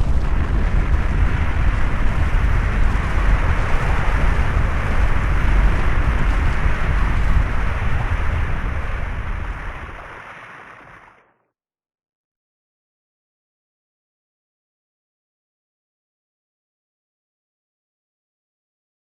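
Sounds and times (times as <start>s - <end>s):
avalanche rumbling with hiss: 0.0s - 11.2s.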